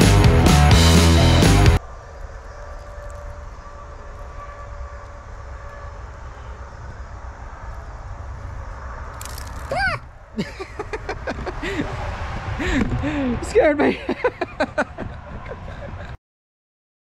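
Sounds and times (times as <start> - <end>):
music: 0.0 - 1.8
steady low rumble: 0.0 - 16.2.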